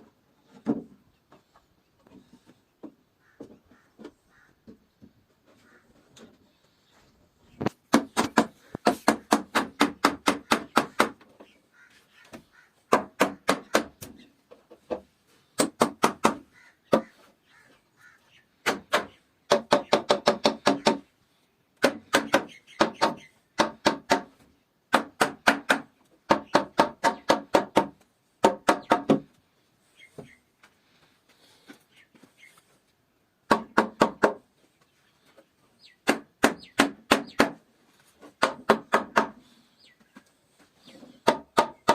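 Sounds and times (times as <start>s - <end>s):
hammer striking wood: 7.9s - 11.2s, 12.9s - 14.1s, 15.6s - 17.1s, 18.6s - 21.0s, 21.8s - 24.3s, 24.9s - 29.3s, 33.5s - 34.4s, 36.0s - 37.6s, 38.4s - 39.4s, 41.2s - 41.9s.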